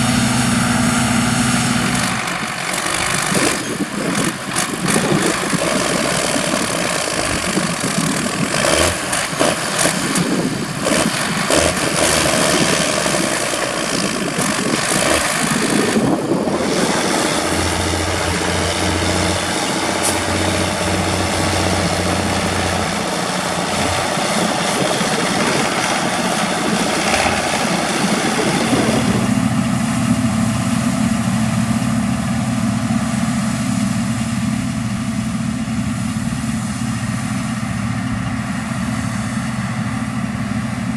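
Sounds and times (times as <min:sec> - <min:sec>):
heavy engine drone: 0:00.0 - 0:40.9
harvest machinery clattering: 0:01.0 - 0:29.9.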